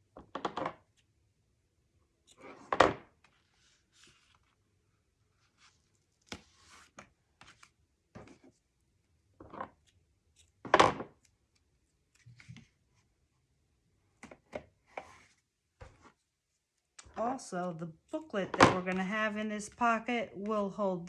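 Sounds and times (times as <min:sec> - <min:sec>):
paper rustling: 0:03.3 - 0:04.6.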